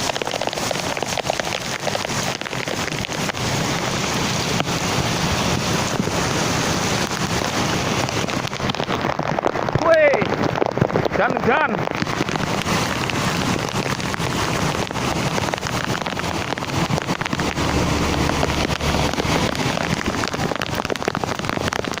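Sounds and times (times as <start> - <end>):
heavy rain pouring: 0.0 - 22.0
low rumble: 11.8 - 22.0.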